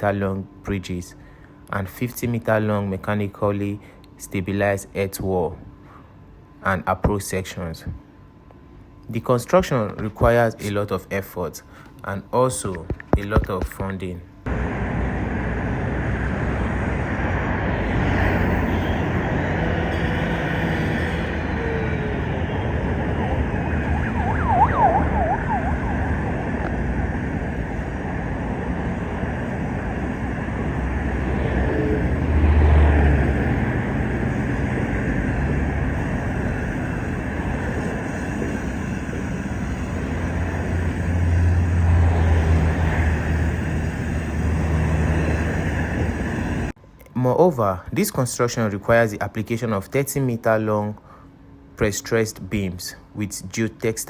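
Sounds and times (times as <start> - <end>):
road traffic noise: 14.4 - 46.8
low rumbles: 14.5 - 46.8
brief warbling tone: 18.7 - 26.4.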